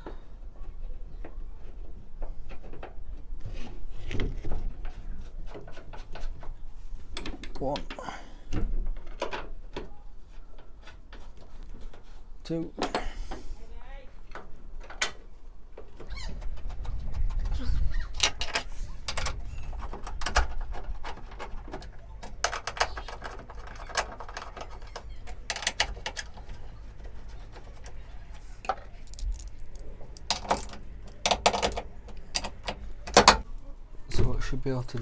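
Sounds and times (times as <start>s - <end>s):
metal clicks and clinks: 27.8s - 33.4s.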